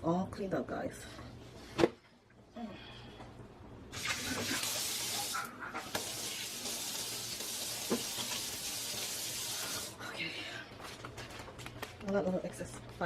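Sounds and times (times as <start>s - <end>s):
tap running into sink: 7.8s - 8.5s.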